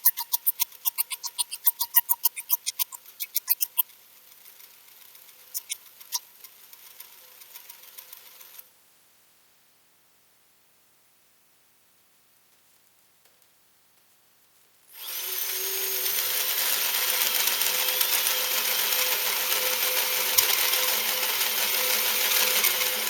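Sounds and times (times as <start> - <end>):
hole saw ticking on metal: 0.0 - 3.8
drill whine: 15.0 - 23.0.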